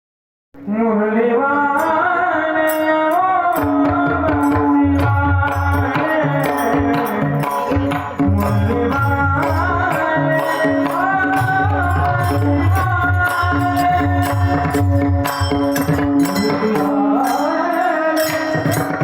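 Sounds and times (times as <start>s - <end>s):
hand drum beat: 3.6s - 17.5s.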